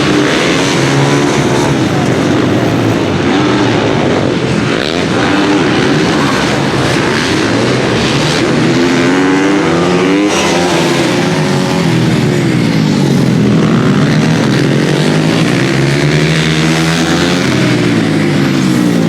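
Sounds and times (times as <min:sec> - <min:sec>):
racing motorcycles revving: 0:00.0 - 0:19.0.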